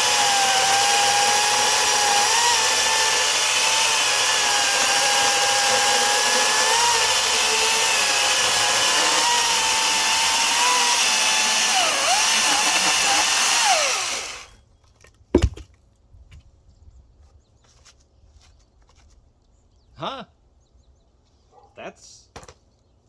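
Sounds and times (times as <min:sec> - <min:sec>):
electric chainsaw cutting wood: 0:00.0 - 0:14.6
heavy thud: 0:15.4 - 0:15.6.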